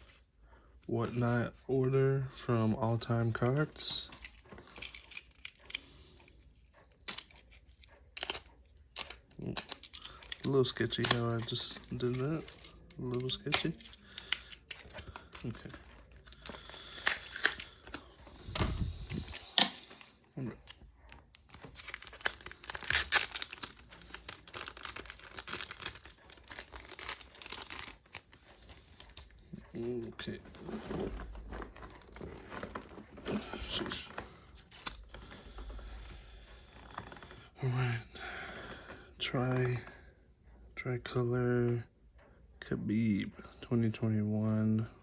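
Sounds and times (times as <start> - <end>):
package being torn open: 8.2 - 18.7, 21.3 - 28.3.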